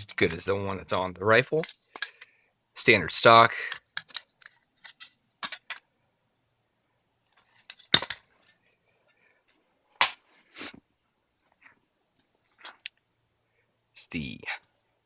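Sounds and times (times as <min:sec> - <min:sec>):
clicks and knocks of handling: 0:01.6 - 0:02.3, 0:03.7 - 0:05.9.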